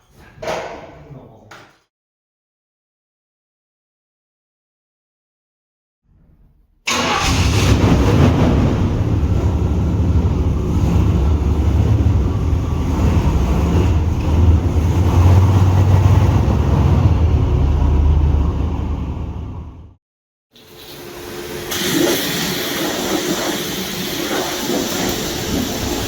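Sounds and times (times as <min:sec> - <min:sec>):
car engine rumbling: 0:06.9 - 0:20.0.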